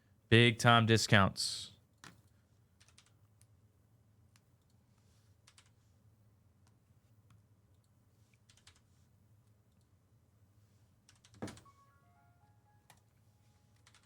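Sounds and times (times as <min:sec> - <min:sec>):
computer keyboard typing clicks: 0:02.8 - 0:03.2, 0:08.5 - 0:08.8.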